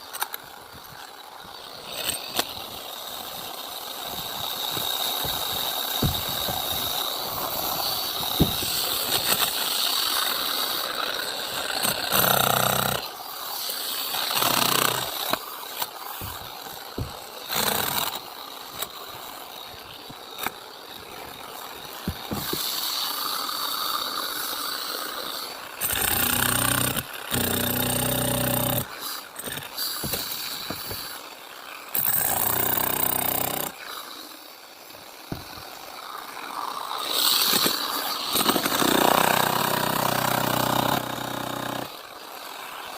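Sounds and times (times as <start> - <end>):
concrete saw whining and grinding: 0.0 - 42.9
knocks and rattles: 4.1 - 9.4, 22.0 - 22.7.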